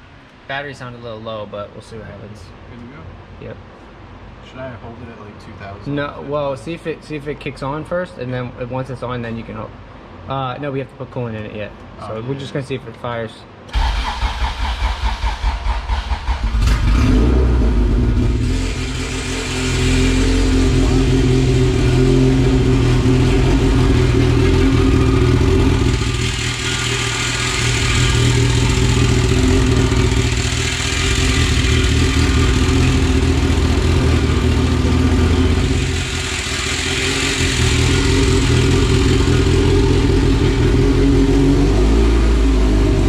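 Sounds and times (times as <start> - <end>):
car engine fast idle: 13.7 - 41.2.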